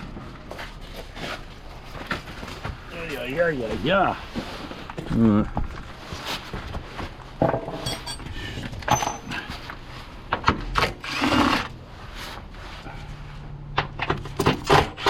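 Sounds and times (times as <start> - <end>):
metal knocks and clanks: 7.4 - 9.4.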